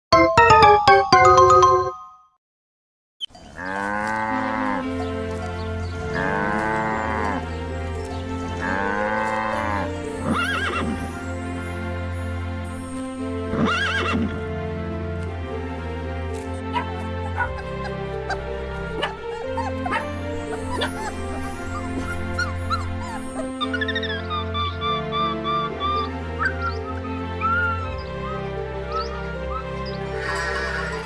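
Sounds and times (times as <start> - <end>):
background music: 0.1 - 2.2, 4.0 - 31.0
farm animal calling: 16.7 - 31.0.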